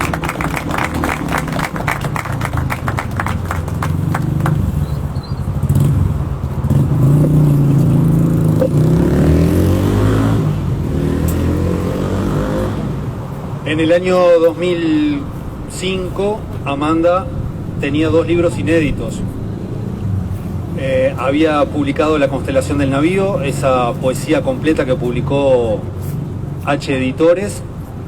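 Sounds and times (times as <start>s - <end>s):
hand clapping: 0.0s - 4.8s
vehicle engine revving past: 0.0s - 13.2s.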